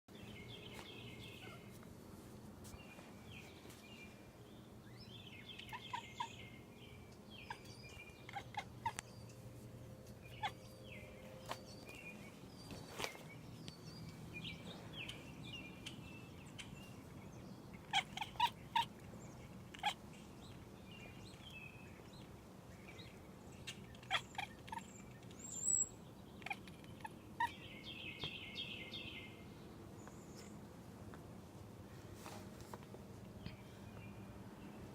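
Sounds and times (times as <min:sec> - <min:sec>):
small animal chirping: 0:17.8 - 0:20.5, 0:23.6 - 0:27.6.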